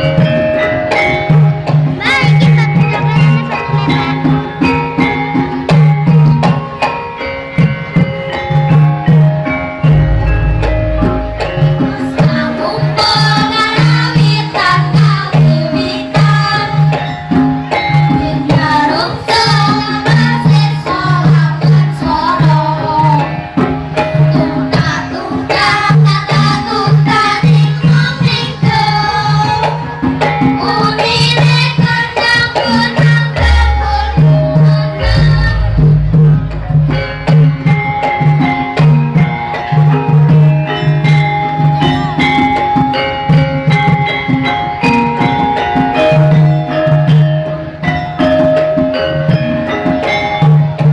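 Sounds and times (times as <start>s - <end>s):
gamelan ensemble playing: 0.0s - 50.9s
hand-drum strokes: 7.6s - 15.6s, 32.2s - 40.4s
deep low notes: 9.9s - 12.4s, 33.4s - 37.9s.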